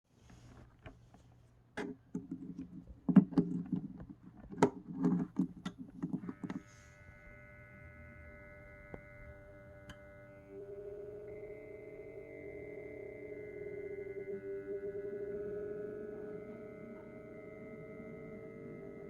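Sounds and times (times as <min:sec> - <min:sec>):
cooling fan whine: 0:06.4 - 0:19.0.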